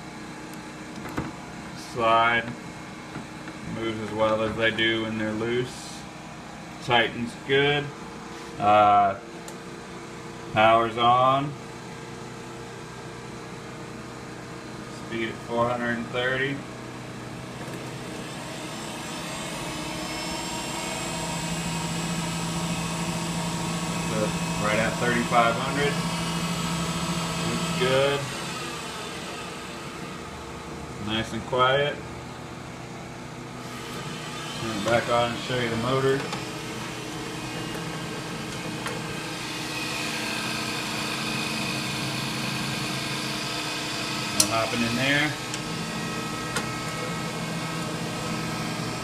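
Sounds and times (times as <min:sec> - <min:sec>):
lathe spindle hum: 0:11.6 - 0:49.0.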